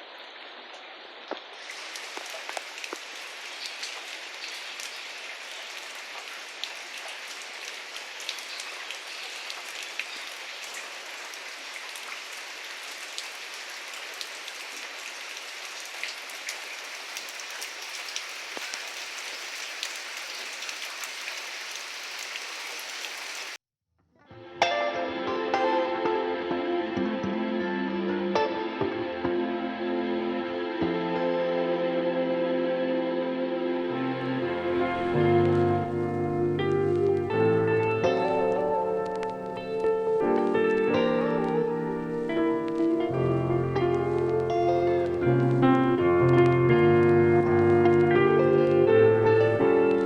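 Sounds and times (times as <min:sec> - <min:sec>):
steady rain hiss: 0:00.0 - 0:23.6, 0:34.0 - 0:50.0
raindrops ticking on surfaces: 0:00.1 - 0:23.6, 0:34.2 - 0:50.0.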